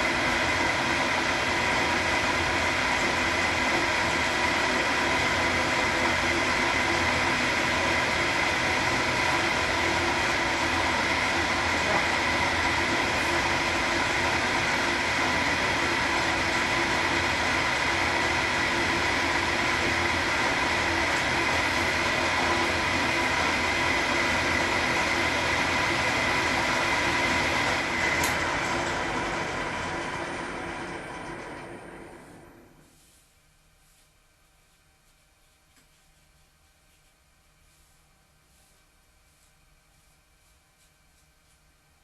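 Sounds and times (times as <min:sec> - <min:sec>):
milling machine whining: 0:00.0 - 0:32.8.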